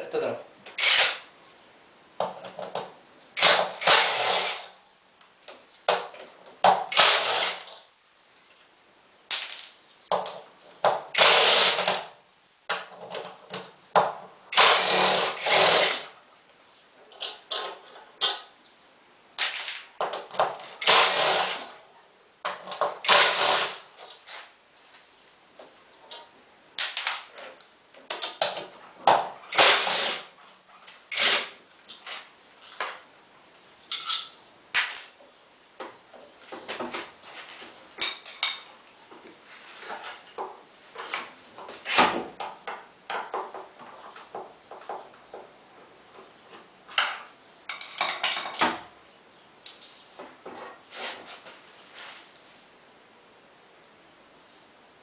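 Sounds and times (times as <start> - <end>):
metal tools clinking and scraping: 33.9 - 35.2, 47.7 - 48.7.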